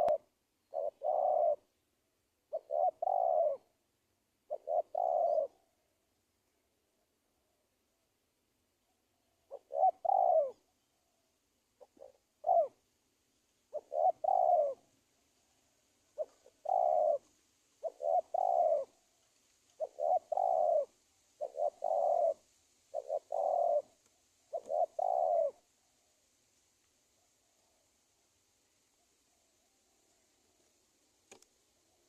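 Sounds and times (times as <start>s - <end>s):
dove cooing: 0.0s - 1.8s, 2.5s - 3.8s, 4.5s - 5.8s, 9.5s - 10.8s, 11.8s - 12.8s, 13.7s - 15.0s, 16.0s - 26.0s.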